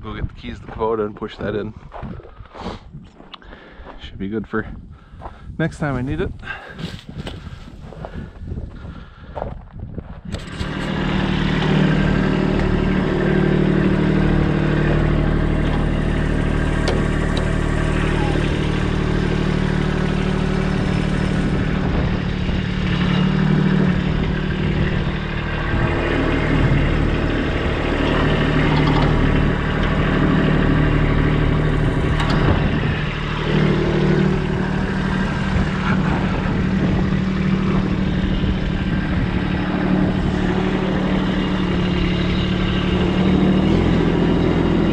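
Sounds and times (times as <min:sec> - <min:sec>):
tractor diesel engine running: 0:10.3 - 0:44.9.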